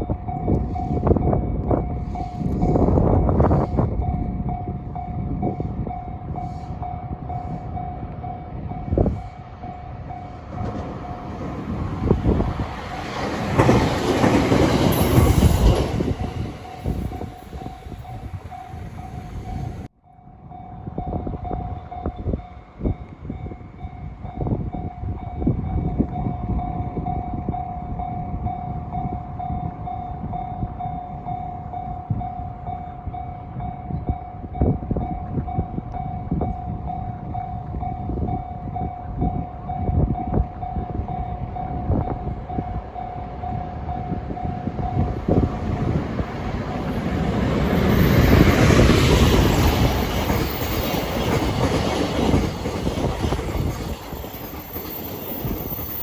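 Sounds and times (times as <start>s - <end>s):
train running: 0.0s - 19.9s, 35.3s - 56.0s.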